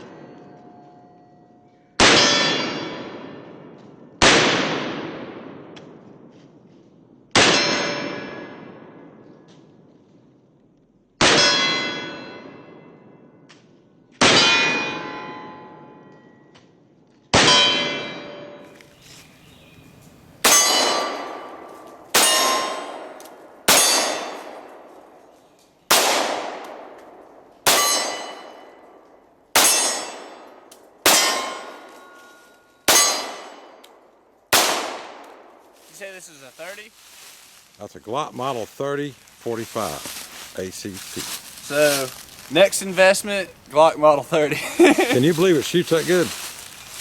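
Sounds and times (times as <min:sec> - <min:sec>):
steel target ringing: 0:02.0 - 0:03.2, 0:07.4 - 0:08.6, 0:11.3 - 0:13.0, 0:14.3 - 0:16.3, 0:17.4 - 0:18.7, 0:20.4 - 0:25.0, 0:27.6 - 0:29.0, 0:29.6 - 0:33.8.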